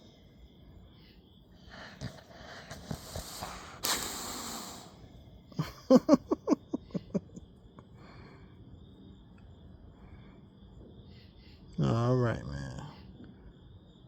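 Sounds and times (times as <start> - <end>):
puppy breathing noisily: 1.6 - 5.0.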